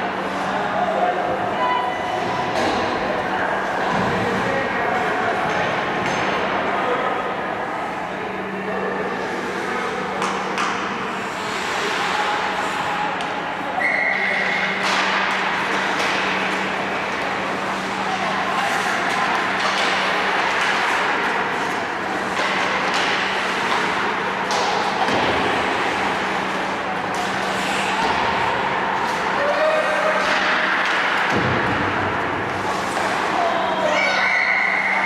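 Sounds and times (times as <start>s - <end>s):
echoing voices: 0.0s - 35.0s
high whistle tone: 13.8s - 14.4s.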